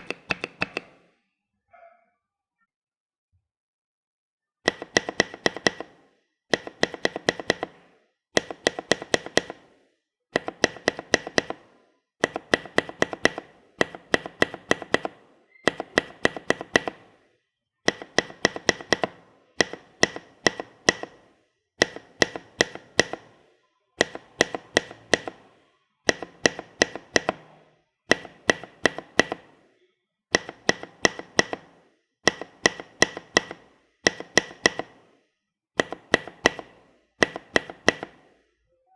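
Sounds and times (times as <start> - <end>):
keyboard spacebar clacking: 0.0 - 1.0, 4.7 - 7.8, 10.4 - 11.6, 12.2 - 17.0.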